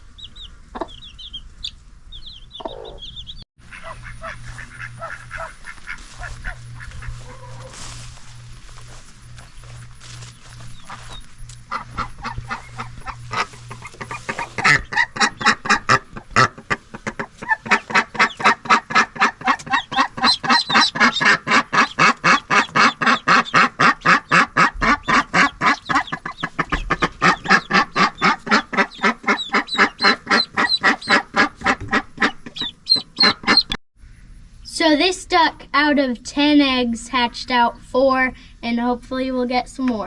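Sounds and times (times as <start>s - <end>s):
ducklings peeping: 0.0s - 33.8s
duck calling rapidly: 3.6s - 8.0s, 10.4s - 33.8s.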